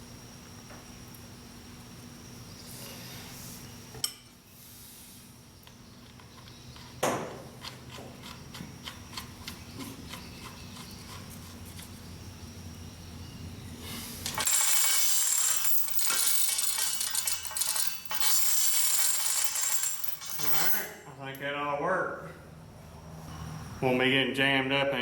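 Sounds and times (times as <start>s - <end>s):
metal parts clicking and clinking: 14.2s - 21.1s
loud steady metallic rattle: 14.3s - 21.0s.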